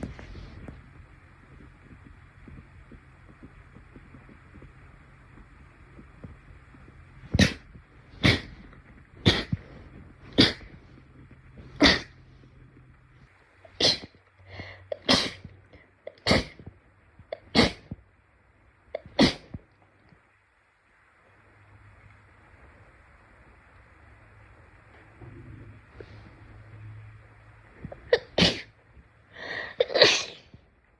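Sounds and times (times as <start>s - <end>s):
faint steady hum: 0.0s - 30.9s
short sharp sneezes: 28.2s - 28.7s, 29.8s - 30.4s.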